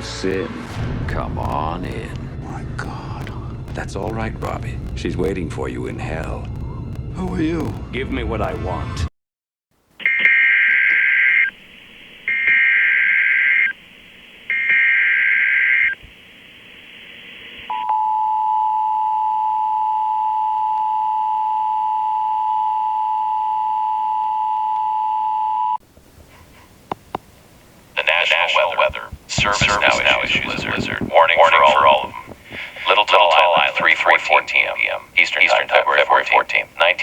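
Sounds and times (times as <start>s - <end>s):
digital header bursts: 28.0s - 37.0s
person speaking warning: 28.0s - 37.0s.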